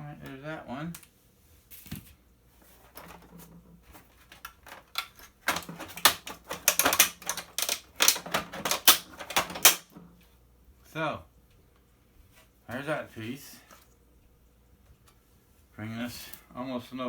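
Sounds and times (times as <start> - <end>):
plastic parts clicking and rattling: 2.8 - 10.2.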